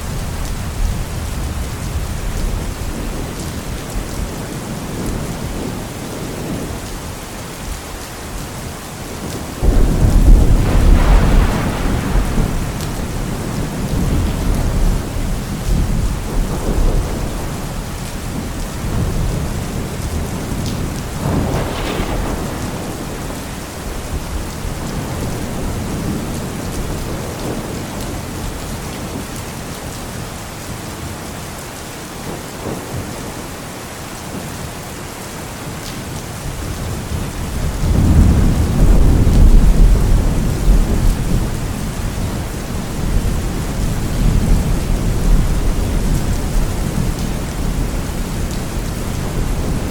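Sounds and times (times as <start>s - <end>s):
heavy rain: 0.0s - 49.9s
rolling thunder: 9.0s - 29.2s, 36.1s - 49.9s.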